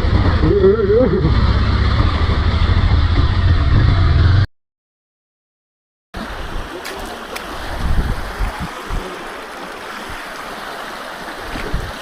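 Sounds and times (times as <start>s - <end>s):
low rumbling bumps: 0.0s - 4.5s
stream water rushing: 6.2s - 12.0s.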